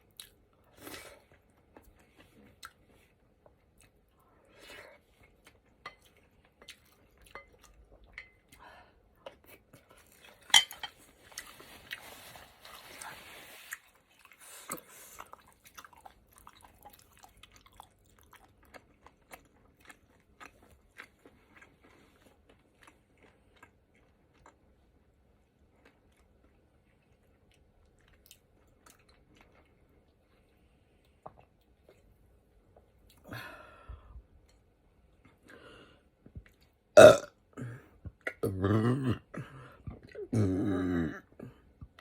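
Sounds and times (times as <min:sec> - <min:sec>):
person chewing: 0:00.0 - 0:04.2, 0:11.1 - 0:24.9, 0:25.5 - 0:32.1
spoon clinking against bowl: 0:10.5 - 0:10.9.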